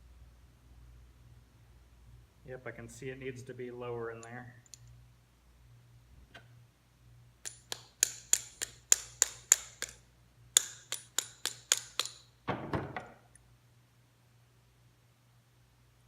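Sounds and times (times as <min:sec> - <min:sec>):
hammer tapping metal bearing: 0:07.4 - 0:10.0, 0:10.6 - 0:12.3.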